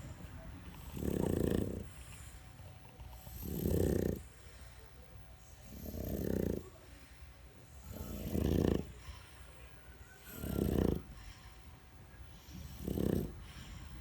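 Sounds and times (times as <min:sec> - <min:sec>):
dog breathing: 0:00.6 - 0:14.0
dog snoring: 0:00.7 - 0:02.2, 0:03.0 - 0:04.4, 0:05.6 - 0:06.8, 0:07.8 - 0:09.2, 0:10.2 - 0:11.2, 0:12.4 - 0:13.8.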